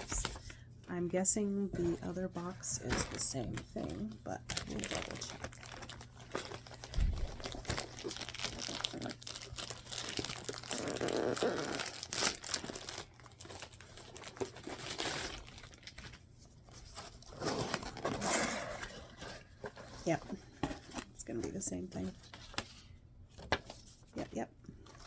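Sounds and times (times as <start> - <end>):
packaging crinkling and tearing: 2.9 - 19.8.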